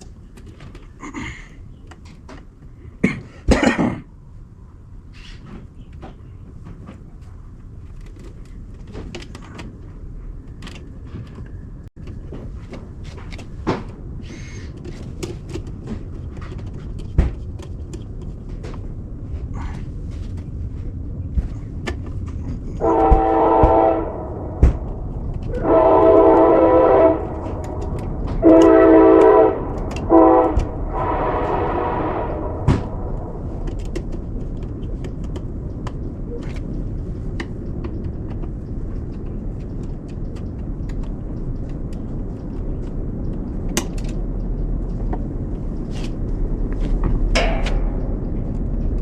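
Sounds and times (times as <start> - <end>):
low rumble of train: 0.0 - 49.0
locomotive air horn blasts: 22.8 - 24.8, 25.5 - 33.2
clicks and knocks: 46.0 - 49.0.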